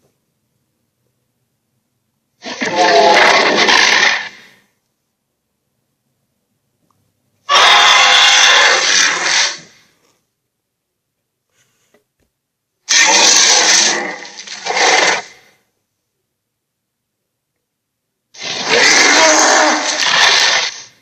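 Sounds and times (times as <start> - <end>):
loud harsh monster roars: 2.4 - 4.6, 7.5 - 9.9, 12.9 - 15.6, 18.4 - 21.0.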